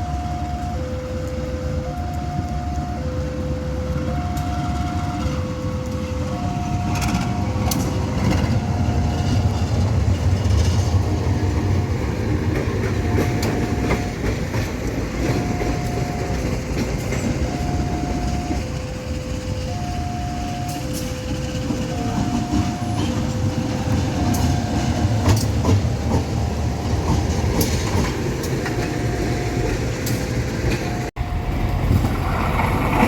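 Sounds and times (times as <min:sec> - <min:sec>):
train wheels rumbling and clattering: 0:00.0 - 0:33.0
level crossing alarm two-tone: 0:04.0 - 0:09.7, 0:12.8 - 0:27.8, 0:30.7 - 0:32.0.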